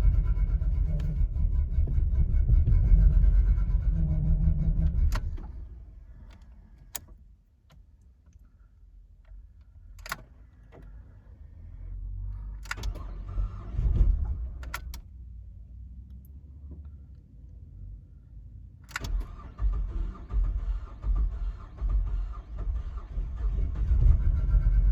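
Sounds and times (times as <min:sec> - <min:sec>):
low engine rumble: 0:00.0 - 0:24.9
ignition key clicks: 0:05.1 - 0:08.4, 0:09.2 - 0:11.0, 0:12.6 - 0:13.4, 0:14.5 - 0:15.1, 0:18.8 - 0:19.5.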